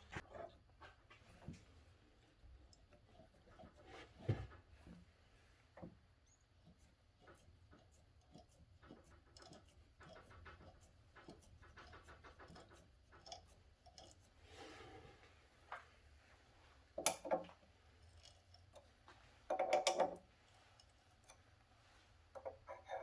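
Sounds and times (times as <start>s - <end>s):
faint clicks and rattles: 5.8s - 14.4s.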